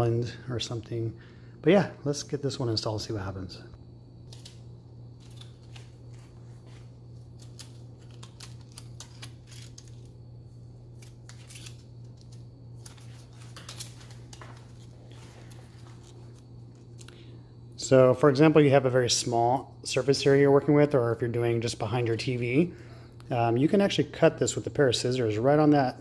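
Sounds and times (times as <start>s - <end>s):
steady low hum: 0.0s - 26.0s
light strip clicks and crinkles: 4.2s - 4.6s, 5.2s - 10.2s, 10.9s - 17.2s.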